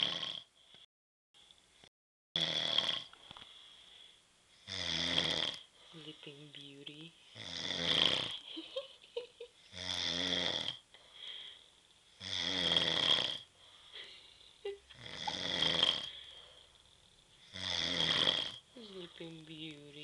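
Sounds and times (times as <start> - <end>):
man snoring: 0.0 - 0.5, 2.4 - 3.1, 4.6 - 5.7, 7.4 - 8.4, 9.7 - 10.8, 12.2 - 13.5, 14.9 - 16.2, 17.4 - 18.6.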